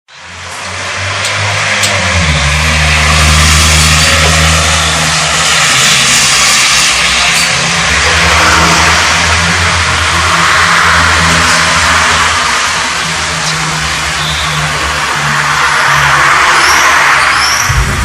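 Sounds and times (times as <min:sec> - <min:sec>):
traffic noise: 0:00.1 - 0:18.0
vehicle engines humming: 0:00.1 - 0:18.0.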